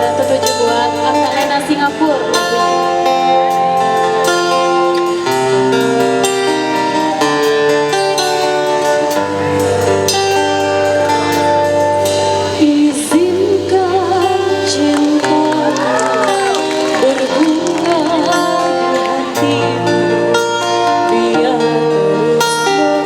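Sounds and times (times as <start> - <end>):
guitar accompaniment: 0.0 - 23.0
woman singing with vibrato: 12.6 - 23.0.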